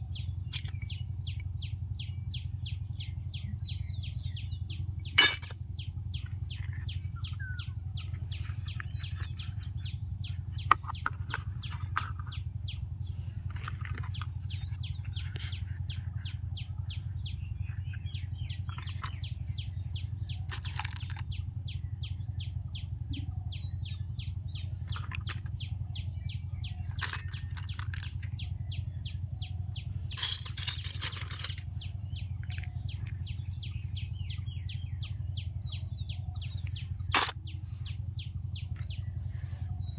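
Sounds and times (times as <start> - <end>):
plastic toy pieces clicking: 20.5 - 21.2, 30.1 - 31.6, 37.1 - 37.4.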